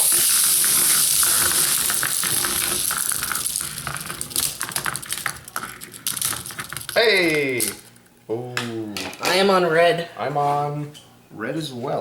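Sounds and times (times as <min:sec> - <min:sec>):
plastic balls rolling: 0:00.0 - 0:08.1.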